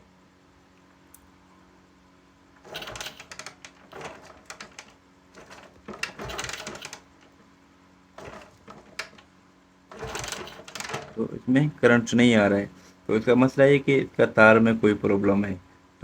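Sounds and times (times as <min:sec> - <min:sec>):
clattering rattling noise: 0:02.6 - 0:07.4, 0:08.2 - 0:09.3, 0:09.9 - 0:11.4.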